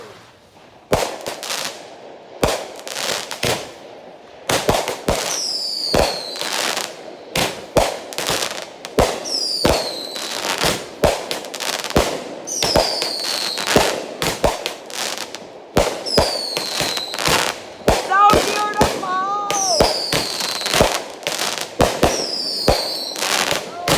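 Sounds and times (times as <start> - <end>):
firework crackle: 0.0 - 23.9
firework bangs: 0.6 - 23.9.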